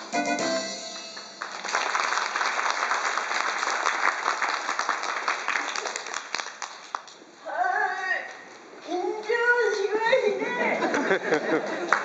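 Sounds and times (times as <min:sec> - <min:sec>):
audience applauding: 0:01.0 - 0:07.2, 0:10.9 - 0:12.0.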